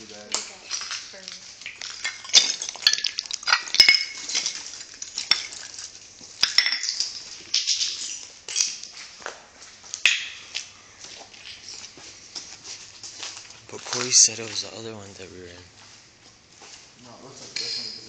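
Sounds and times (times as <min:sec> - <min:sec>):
footsteps crunching over debris: 0:00.0 - 0:17.6
brittle pieces knocking together: 0:00.3 - 0:09.0.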